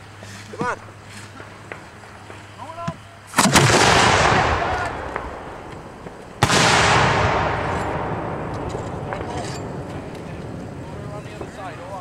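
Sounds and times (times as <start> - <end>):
firework shells exploding: 3.3 - 10.8.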